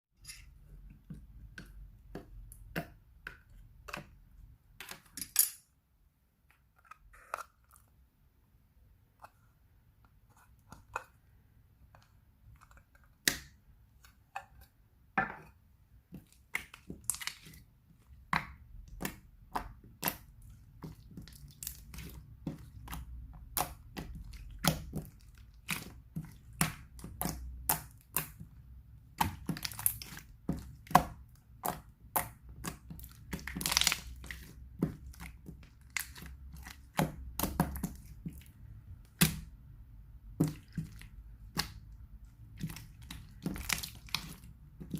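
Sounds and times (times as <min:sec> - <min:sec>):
slime crackling and popping: 0:29.2 - 0:38.4, 0:42.5 - 0:44.9.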